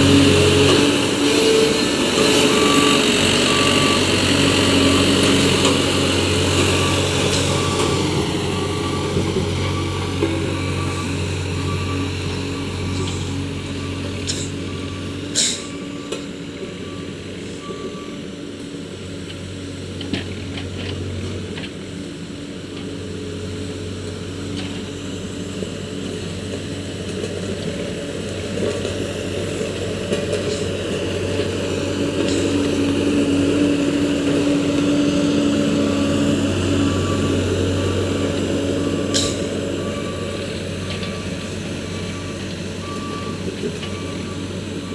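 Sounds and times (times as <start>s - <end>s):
reversing alarm beeping: 0.0s - 18.3s, 30.1s - 44.9s
road roller engine running: 0.0s - 44.9s.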